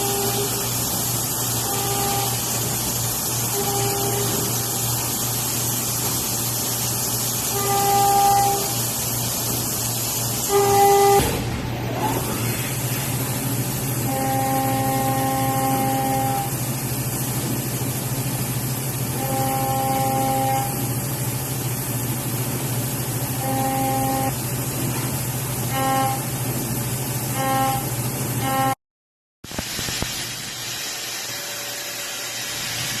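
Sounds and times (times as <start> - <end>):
machine electrical hum: 0.0 - 28.8.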